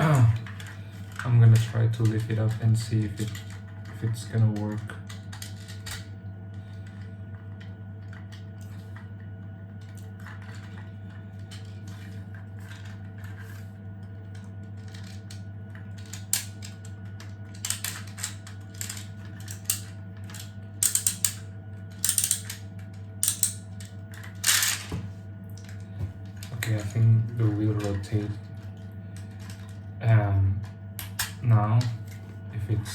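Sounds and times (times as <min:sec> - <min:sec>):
steady low hum: 0:00.0 - 0:32.9
plastic toy gears ratcheting: 0:17.5 - 0:21.4, 0:22.0 - 0:22.6, 0:23.2 - 0:24.8.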